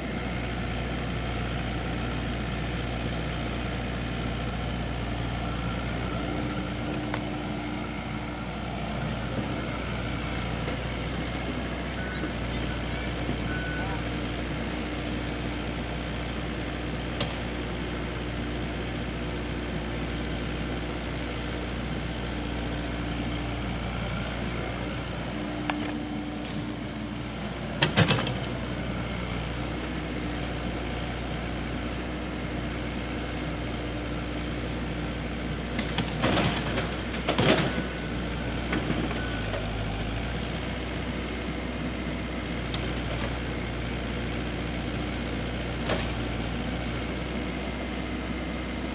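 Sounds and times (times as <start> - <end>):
excavator engine running: 0.0 - 48.9.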